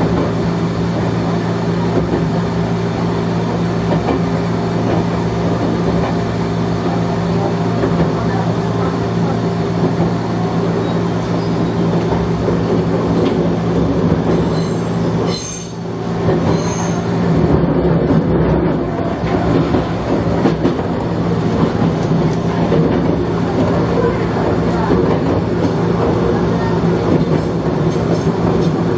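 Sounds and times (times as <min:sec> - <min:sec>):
train motor and gear hum: 0:00.0 - 0:28.9
wheels rumbling on rails: 0:00.0 - 0:28.9
high-pitched wheel squeals: 0:14.4 - 0:15.9, 0:16.5 - 0:17.1.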